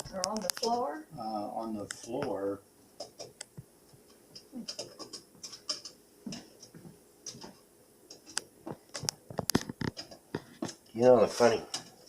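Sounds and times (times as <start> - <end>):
handling clicks taps and scratches: 3.0 - 10.9.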